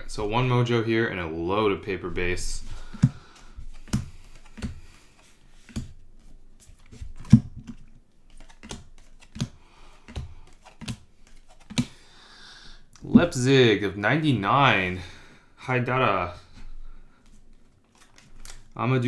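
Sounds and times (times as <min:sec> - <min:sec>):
trading cards clicking and tapping: 0:02.6 - 0:06.0, 0:06.6 - 0:12.1.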